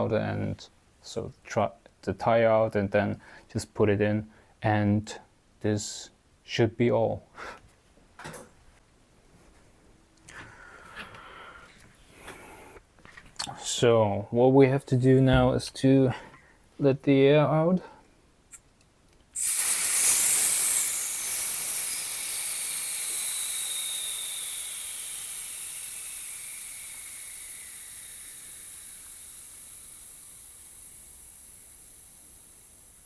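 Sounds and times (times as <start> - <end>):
air hissing out of tyre valve: 19.4 - 33.0.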